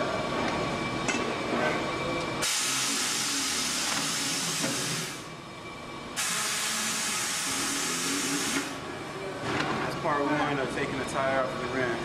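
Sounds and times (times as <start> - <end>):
compressed air hissing: 2.4 - 5.2, 6.2 - 8.8.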